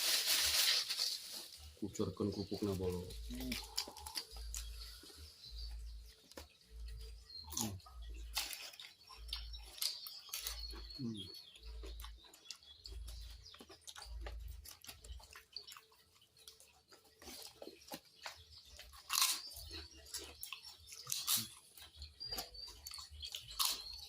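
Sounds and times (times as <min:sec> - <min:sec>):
sharp crunching: 0:00.0 - 0:24.0
person chewing wetly: 0:03.5 - 0:06.5, 0:07.3 - 0:24.0.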